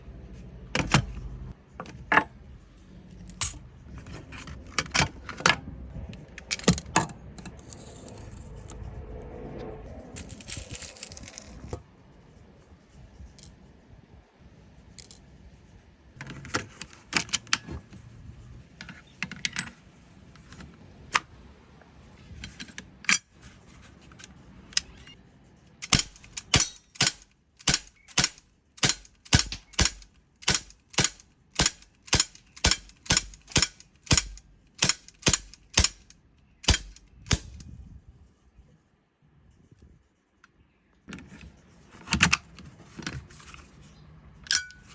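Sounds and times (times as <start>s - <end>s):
pistol clicks and rattles: 25.8s - 37.6s.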